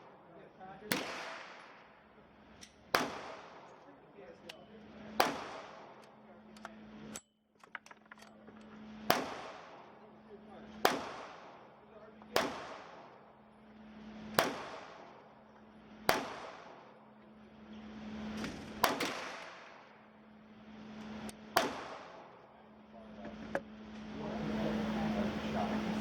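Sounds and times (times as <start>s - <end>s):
loud gunshots with echo: 0.0s - 2.2s, 2.8s - 4.0s, 5.0s - 6.2s, 9.0s - 17.2s, 18.2s - 20.2s, 21.4s - 22.5s
fainter gunshots: 0.0s - 6.8s, 9.0s - 17.1s, 17.9s - 20.2s, 20.8s - 22.6s.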